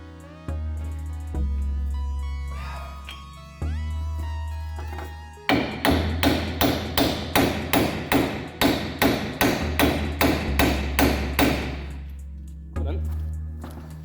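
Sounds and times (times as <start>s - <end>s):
hammer blows: 4.8s - 12.0s.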